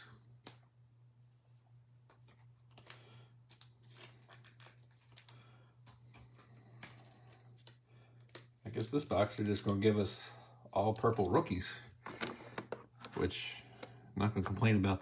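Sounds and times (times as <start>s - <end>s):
low steady hum: 0.0s - 15.0s
trading cards rustling and clicking: 2.0s - 10.2s, 10.8s - 14.7s.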